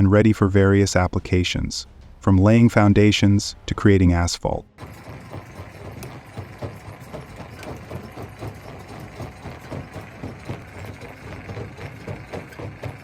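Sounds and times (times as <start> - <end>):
rock crusher clattering: 4.8 - 13.0.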